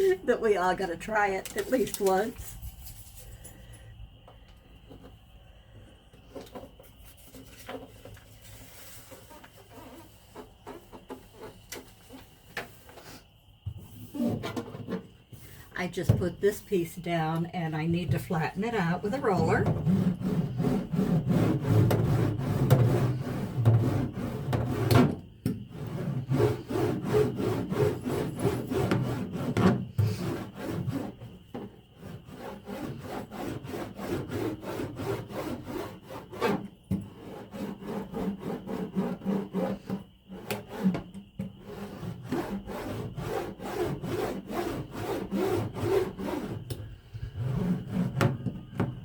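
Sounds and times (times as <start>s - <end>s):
roller rubbing over foil mat: 7.0s - 13.2s, 18.7s - 46.7s.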